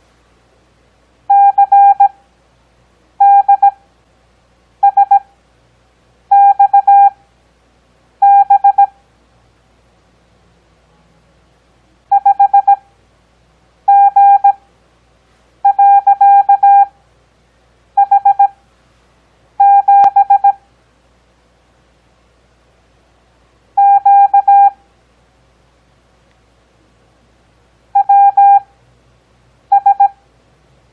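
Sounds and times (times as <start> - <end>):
morse code beeps: 1.3 - 2.2, 3.2 - 3.8, 4.8 - 5.2, 6.3 - 7.2, 8.2 - 8.9, 12.1 - 12.8, 13.9 - 14.6, 15.6 - 16.9, 18.0 - 18.6, 19.6 - 20.6, 23.8 - 24.8, 28.0 - 28.7, 29.7 - 30.2.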